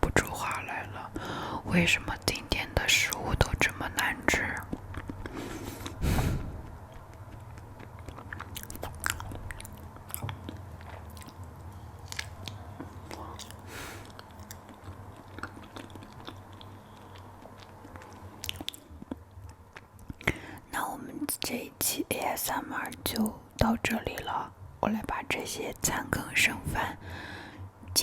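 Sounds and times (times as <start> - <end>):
low steady hum: 0.0 - 28.0
chewing and wet mouth sounds: 2.1 - 20.6.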